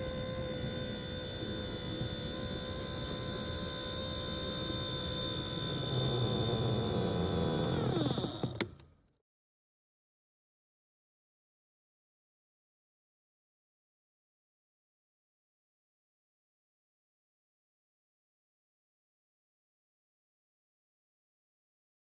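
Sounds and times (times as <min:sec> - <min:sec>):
seat motor whining: 0:00.0 - 0:08.9.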